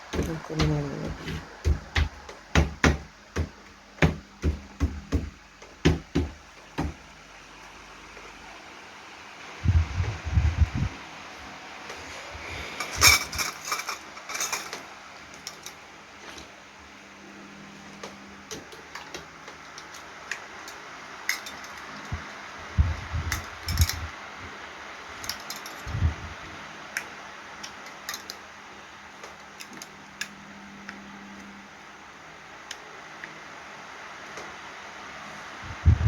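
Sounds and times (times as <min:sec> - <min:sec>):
steady low hum: 0:00.0 - 0:36.0
shoe rack parts clicking and clattering: 0:12.8 - 0:15.8, 0:25.2 - 0:25.9.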